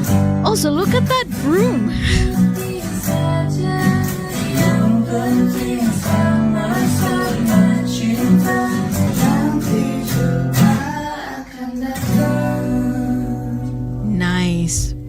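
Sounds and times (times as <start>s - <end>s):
strummed acoustic guitar: 0.0s - 15.0s
people singing together: 2.0s - 13.9s.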